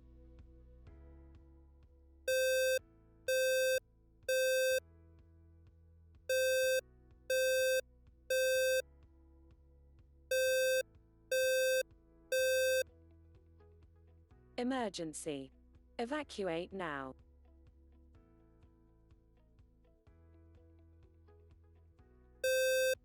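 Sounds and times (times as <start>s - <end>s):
buzzy alarm beeps: 2.3s - 4.8s, 6.3s - 8.8s, 10.3s - 12.8s, 22.4s - 23.0s.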